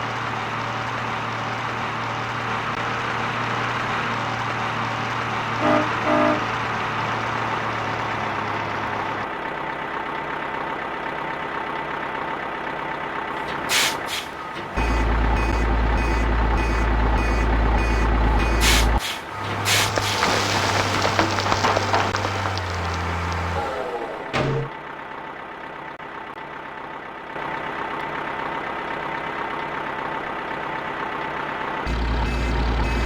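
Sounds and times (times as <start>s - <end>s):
truck engine running: 0.0s - 33.0s
air brakes hissing: 13.4s - 14.7s, 18.4s - 20.4s
reversing beeper: 14.4s - 19.0s, 31.9s - 33.0s.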